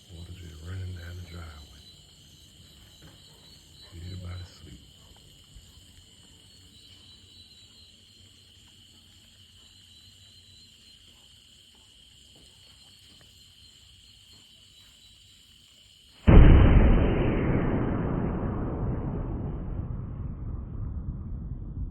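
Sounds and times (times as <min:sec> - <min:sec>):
low hiss: 0:00.0 - 0:02.7
crickets chirping: 0:00.0 - 0:21.9.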